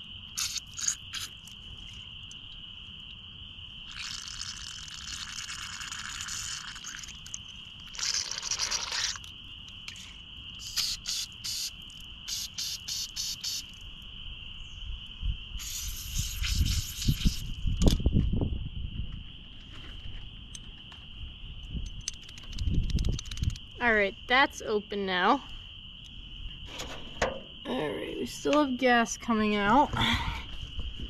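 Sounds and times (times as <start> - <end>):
insects trilling: 0.0 - 31.0
bursts of hissing: 10.6 - 13.7, 15.6 - 17.6.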